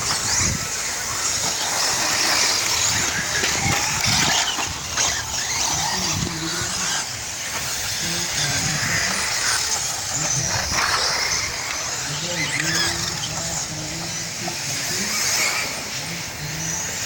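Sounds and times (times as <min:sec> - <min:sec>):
tyre noise: 0:00.0 - 0:16.9
faint voices: 0:00.0 - 0:17.0
rc cars electric motor whine: 0:00.0 - 0:17.0.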